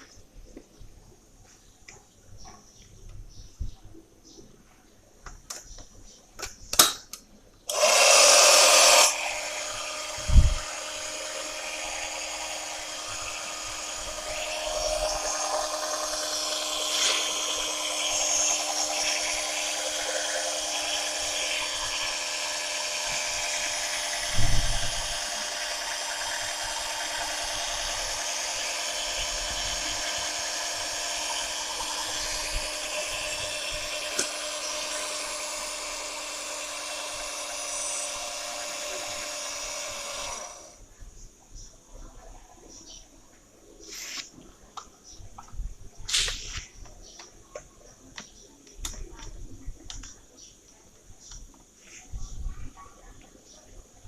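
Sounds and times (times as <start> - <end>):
washing machine motor whirring: 7.7 - 40.8.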